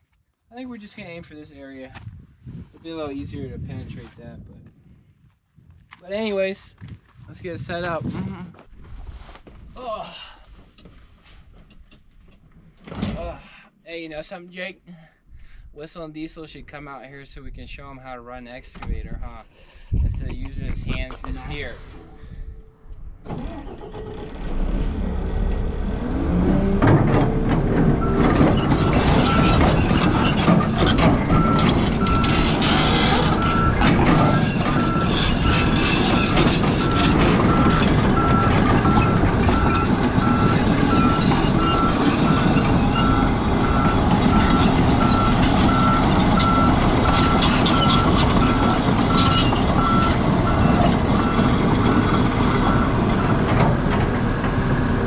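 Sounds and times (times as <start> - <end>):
excavator diesel engine running: 23.2 - 55.0
travel alarm beeping: 36.2 - 53.0.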